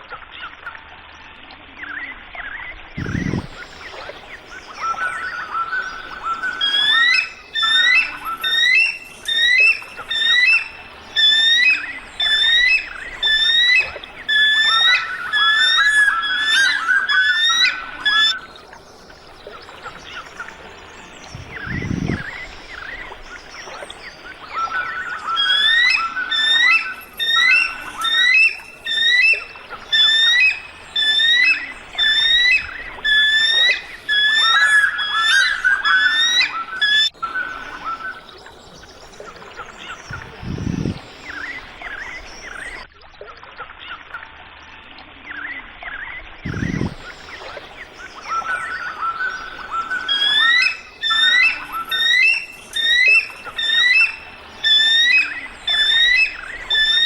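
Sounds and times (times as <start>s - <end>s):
eagle calling: 3.0s - 4.0s, 4.7s - 18.5s, 21.3s - 23.1s, 24.5s - 38.3s, 39.6s - 42.8s, 46.5s - 57.0s.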